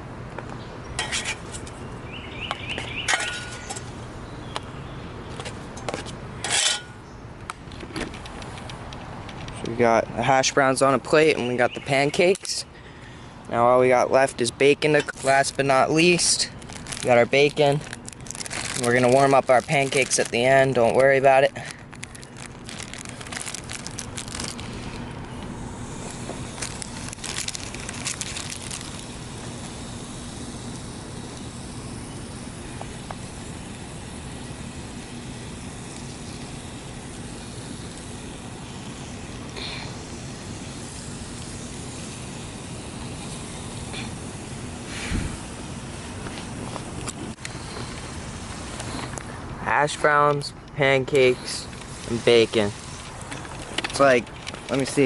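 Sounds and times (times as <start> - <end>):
campfire crackling and popping: 15.9 - 25.4, 26.0 - 49.3.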